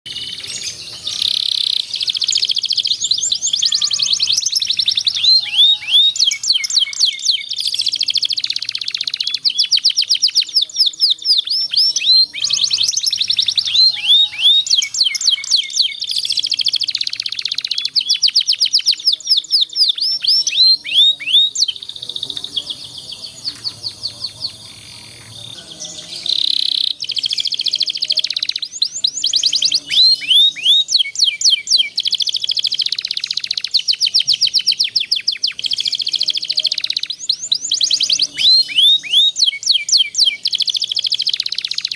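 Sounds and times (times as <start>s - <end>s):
canary singing rolling trills: 0.0s - 41.9s.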